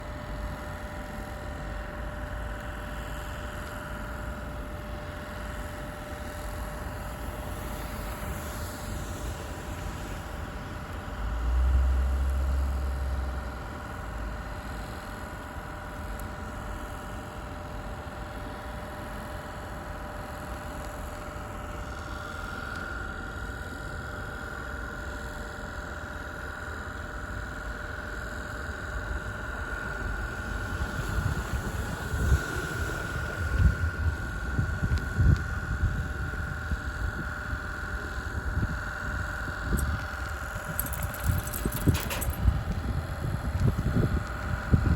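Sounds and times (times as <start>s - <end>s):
wind: 0.0s - 44.9s
wind buffeting microphone: 30.5s - 44.9s.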